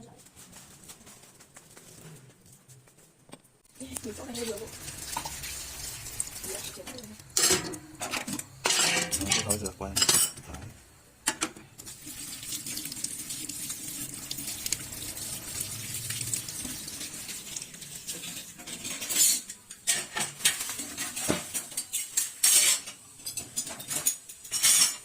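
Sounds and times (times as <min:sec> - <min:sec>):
pots clanking and knocking: 0:04.0 - 0:05.6, 0:06.4 - 0:12.0, 0:16.6 - 0:25.0
dishes clinking and clattering: 0:05.1 - 0:05.5, 0:06.5 - 0:11.9, 0:16.6 - 0:25.0.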